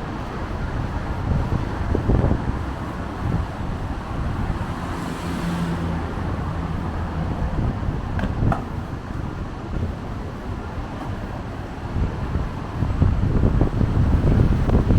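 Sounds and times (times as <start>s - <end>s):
wind buffeting microphone: 0.0s - 14.9s
vehicle passing: 1.4s - 9.4s.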